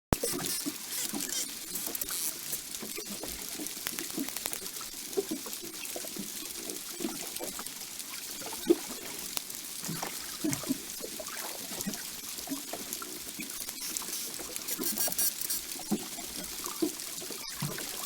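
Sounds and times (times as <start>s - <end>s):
dolphin clicks and burst pulses: 0.2s - 2.7s, 13.7s - 15.9s
underwater sea hiss: 13.7s - 16.1s.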